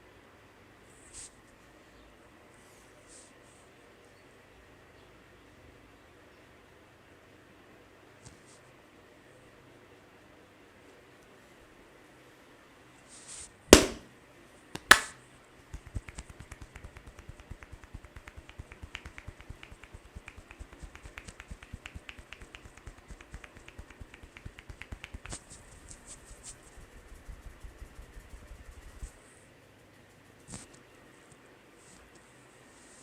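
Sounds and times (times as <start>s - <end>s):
hand taps on head: 13.8s - 14.0s, 15.7s - 25.5s
sharp cracks: 13.8s - 14.1s, 14.8s - 15.2s.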